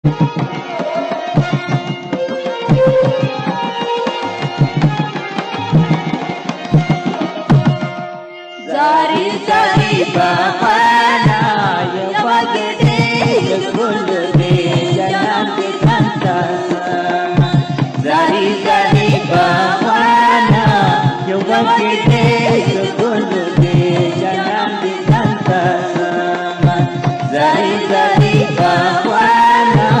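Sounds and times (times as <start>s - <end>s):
instrumental music with drum beat: 0.0s - 30.0s
person singing: 8.6s - 30.0s.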